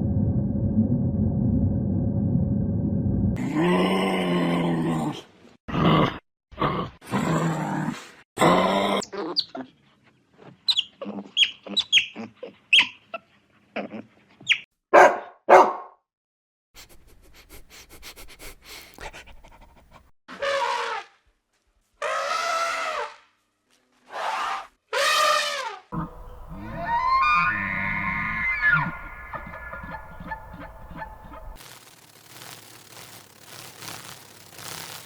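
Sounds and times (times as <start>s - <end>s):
dog barking and yelping: 10.7s - 13.2s, 14.4s - 15.8s, 26.0s - 31.6s.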